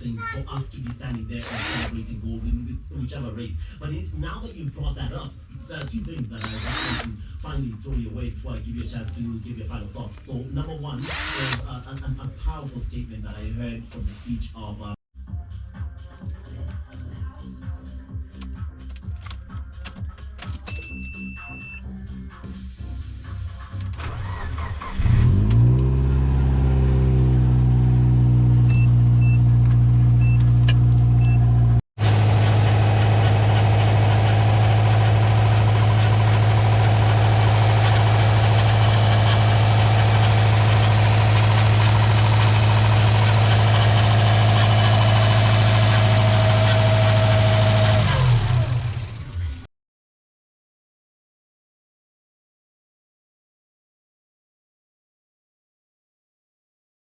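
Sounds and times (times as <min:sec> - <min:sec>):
car engine starting and idling: 0:22.6 - 0:49.7.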